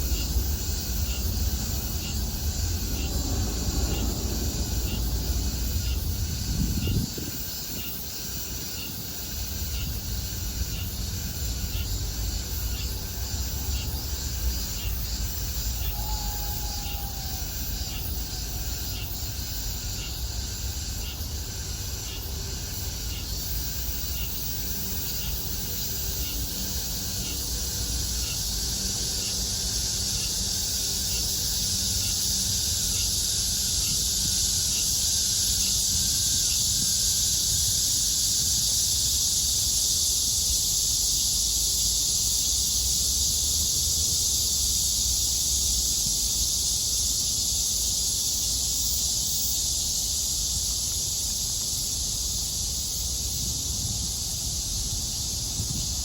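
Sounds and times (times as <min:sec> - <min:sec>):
cicadas buzzing: 0:00.0 - 0:56.0
low rumble: 0:00.7 - 0:07.1.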